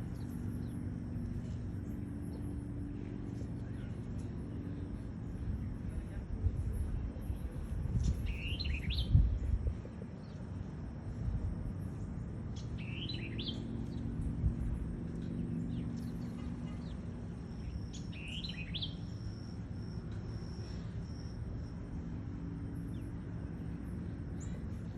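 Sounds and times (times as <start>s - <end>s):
songbird whistling: 8.2s - 9.2s, 12.8s - 13.7s, 17.7s - 19.2s.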